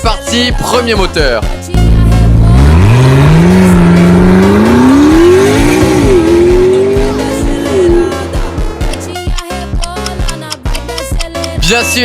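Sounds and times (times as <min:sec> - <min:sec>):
car engine accelerating: 0:01.7 - 0:09.3.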